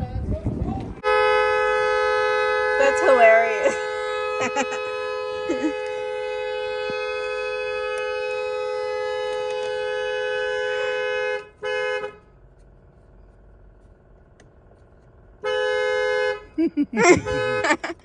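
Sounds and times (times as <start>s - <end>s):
dual-tone car horn: 1.0s - 12.4s, 15.4s - 18.0s.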